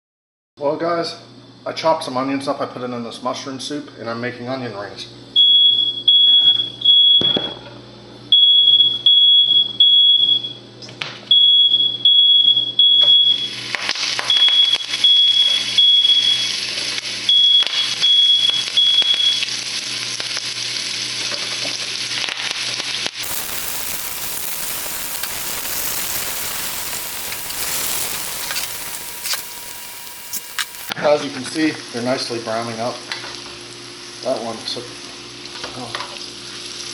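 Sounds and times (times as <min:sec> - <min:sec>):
smoke alarm beeping: 0:05.4 - 0:07.6, 0:08.3 - 0:10.6, 0:11.3 - 0:13.6, 0:14.3 - 0:16.6, 0:17.3 - 0:19.5, 0:23.2 - 0:30.9
oil sizzling loudly: 0:13.6 - 0:30.9, 0:35.4 - 0:36.9.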